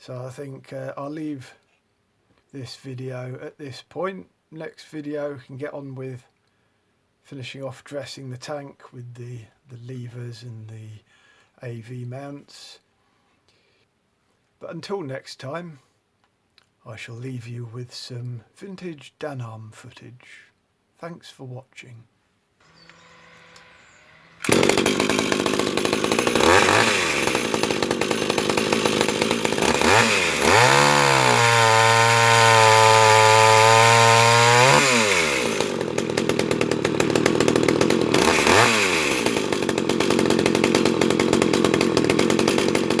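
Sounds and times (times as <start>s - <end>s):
chainsaw revving: 22.6s - 43.0s.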